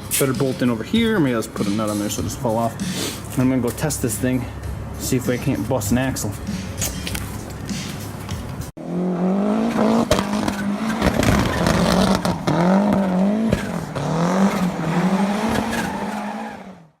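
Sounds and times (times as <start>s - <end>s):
motorcycle engine revving: 8.8s - 15.7s.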